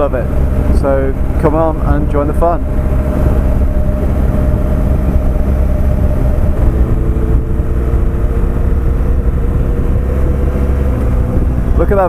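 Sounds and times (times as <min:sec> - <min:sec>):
motorcycle engine cruising: 0:00.0 - 0:12.0
riding wind rush: 0:00.0 - 0:12.0.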